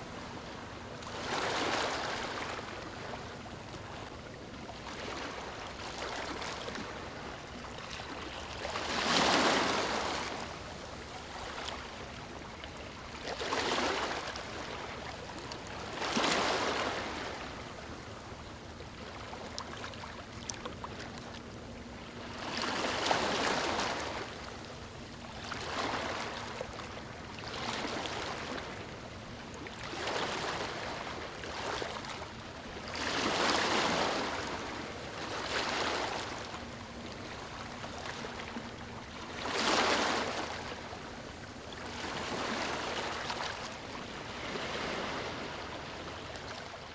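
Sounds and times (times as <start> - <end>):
small waves breaking on sand: 7.9 - 11.9, 37.2 - 46.9.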